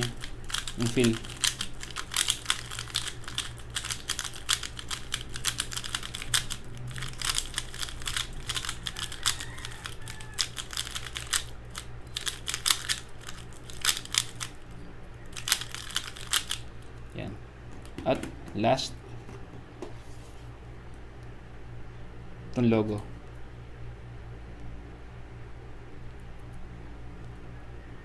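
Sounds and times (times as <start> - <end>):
puzzle cube plastic clicks: 0.0 - 14.6, 15.4 - 16.6.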